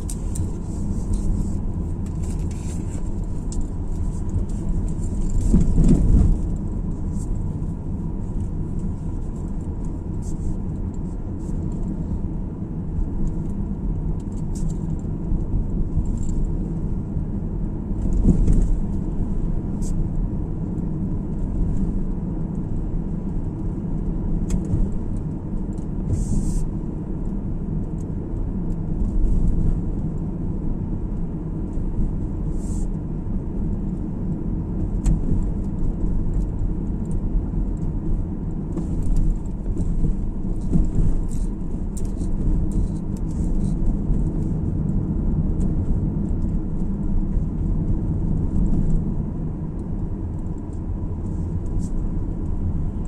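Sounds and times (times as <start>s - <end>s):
car tyres and engine rumble: 0.0s - 53.0s.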